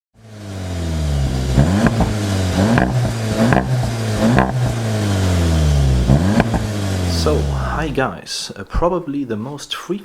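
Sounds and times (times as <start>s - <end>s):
car engine idling and revving: 0.1s - 8.1s.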